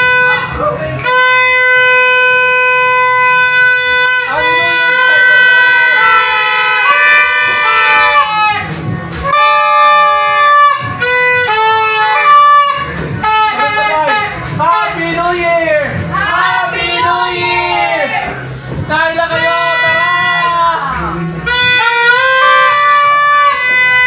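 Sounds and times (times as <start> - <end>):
wind instrument melody: 0.0 - 24.0.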